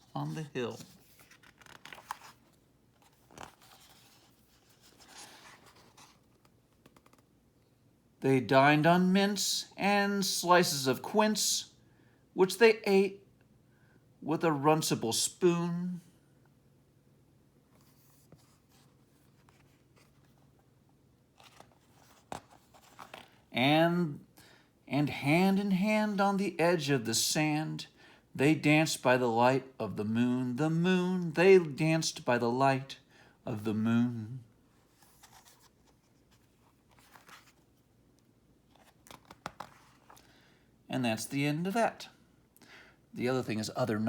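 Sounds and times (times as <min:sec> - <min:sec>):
paper rustling: 0:00.0 - 0:07.3, 0:21.3 - 0:23.4, 0:34.8 - 0:37.9, 0:38.6 - 0:40.3.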